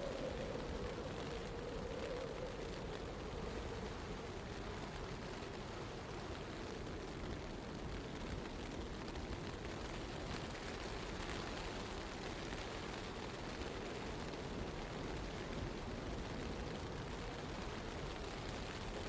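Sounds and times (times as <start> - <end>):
blizzard wind rushing: 0.0 - 7.0.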